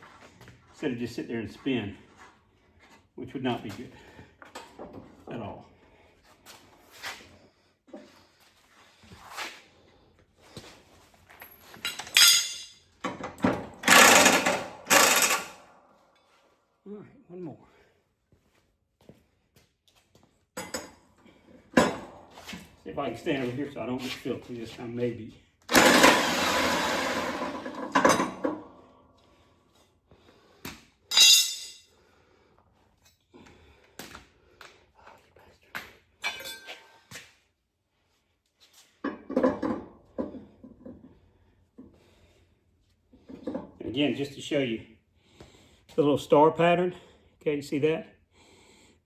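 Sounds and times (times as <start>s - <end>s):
metal clinks: 11.8s - 12.8s, 31.1s - 31.8s
metal tools scraping mower blade: 11.9s - 12.8s, 31.1s - 31.8s
metal clank ringing: 12.1s - 12.7s, 31.1s - 31.8s
handheld power tool running: 13.8s - 15.6s, 25.7s - 27.9s.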